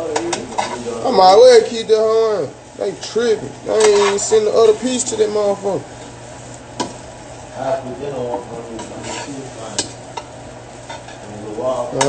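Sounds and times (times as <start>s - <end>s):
food frying hiss: 0.0s - 12.0s.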